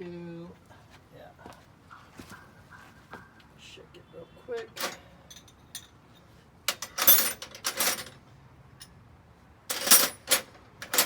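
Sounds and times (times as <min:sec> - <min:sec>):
metallic clinking and rattling: 0:04.7 - 0:08.2, 0:09.7 - 0:11.0.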